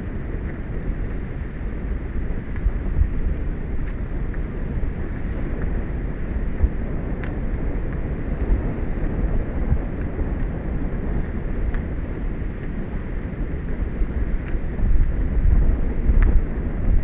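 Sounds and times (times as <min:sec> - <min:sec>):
wind buffeting microphone: 0:00.0 - 0:17.0
faint ticks: 0:02.4 - 0:05.8, 0:14.2 - 0:17.0.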